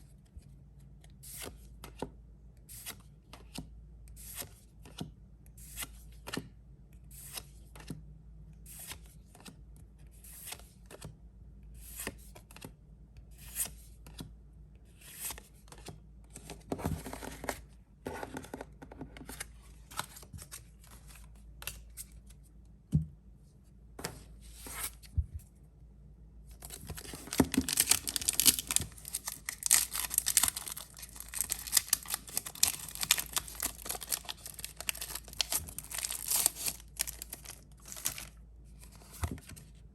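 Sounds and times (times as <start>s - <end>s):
plastic wrapping crinkling and tearing: 26.6s - 38.4s
trading cards being handled: 26.6s - 39.5s.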